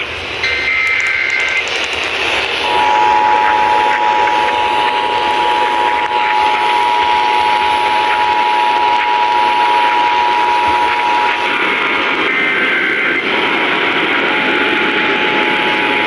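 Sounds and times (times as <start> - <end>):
radio static hiss: 0.0 - 16.0
two-tone alarm signal: 0.4 - 1.7, 2.6 - 16.0
digital data burst: 0.4 - 2.6.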